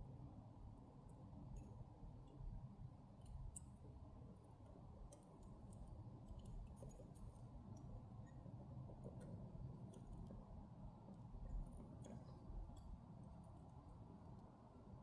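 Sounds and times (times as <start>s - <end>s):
small clicks of fine tools: 3.2s - 3.8s, 5.1s - 8.4s, 11.1s - 13.0s.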